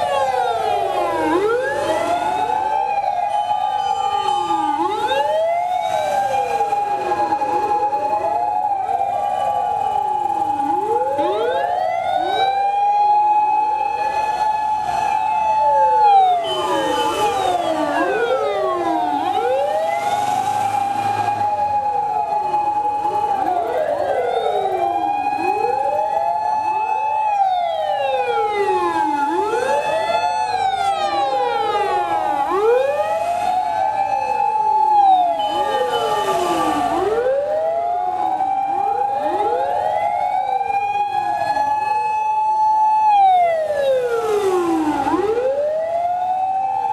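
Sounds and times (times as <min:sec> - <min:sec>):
fire engine sirens wailing: 0:00.0 - 0:46.9.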